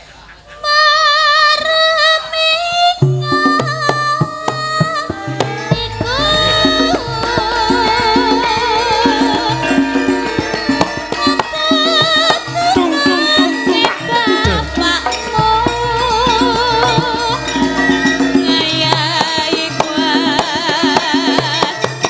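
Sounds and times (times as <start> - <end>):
woman singing with vibrato: 0.6 - 22.0
metallophone tones: 3.0 - 20.3
hand drum strokes: 3.0 - 22.0.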